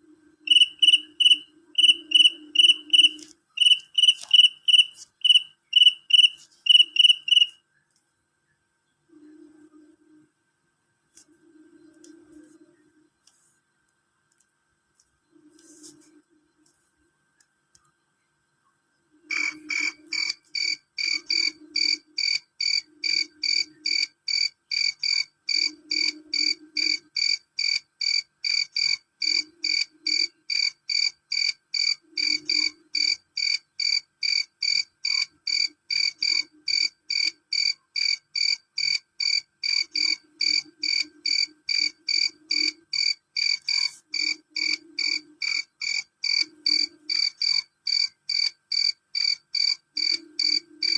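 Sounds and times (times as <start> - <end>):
cricket chirping: 0.4 - 7.6, 19.2 - 50.9.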